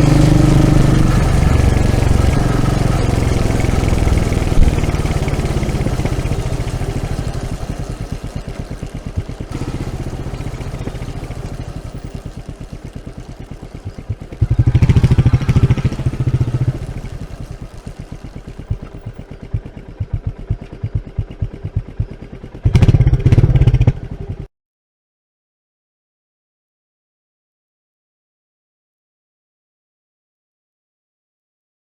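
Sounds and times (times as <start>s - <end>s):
motorcycle exhaust idling and revving: 0.0s - 24.5s.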